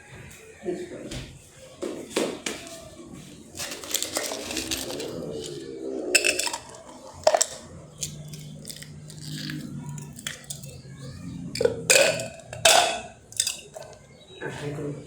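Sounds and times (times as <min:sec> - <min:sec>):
kitchen items clicking and knocking: 0:03.5 - 0:14.2.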